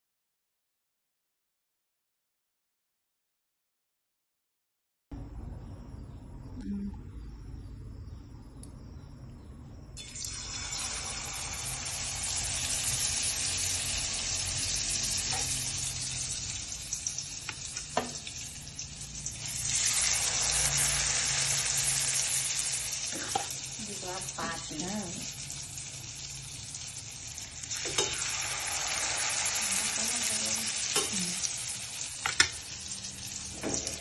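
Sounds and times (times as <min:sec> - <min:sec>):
omelette sizzling in hot oil: 0:10.0 - 0:34.0.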